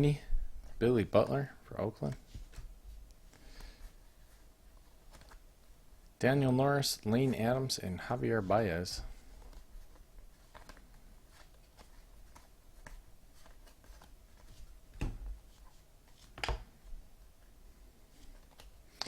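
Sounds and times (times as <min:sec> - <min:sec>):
trading cards flipped by hand: 0:05.0 - 0:05.4, 0:09.4 - 0:16.7.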